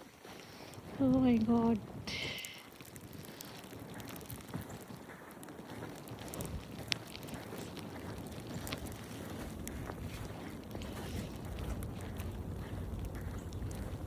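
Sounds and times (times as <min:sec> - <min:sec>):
wind buffeting microphone: 0:00.6 - 0:14.0.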